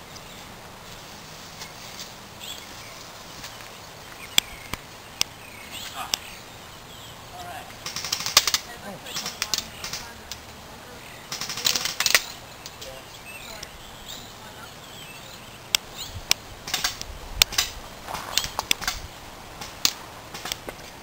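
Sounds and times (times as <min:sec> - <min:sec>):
airsoft guns firing: 0:07.8 - 0:10.2, 0:11.3 - 0:12.3.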